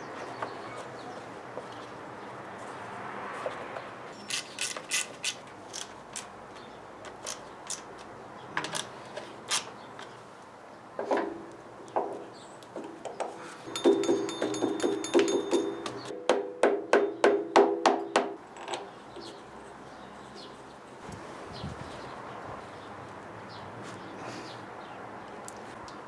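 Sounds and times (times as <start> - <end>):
sharp tool clicks: 4.2 - 6.4, 7.1 - 8.1, 9.5 - 9.7.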